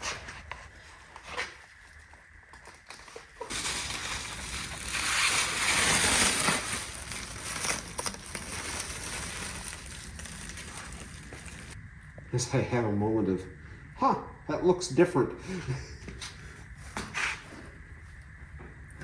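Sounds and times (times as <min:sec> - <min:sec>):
rustling crackling handling noise: 0:00.4 - 0:11.8.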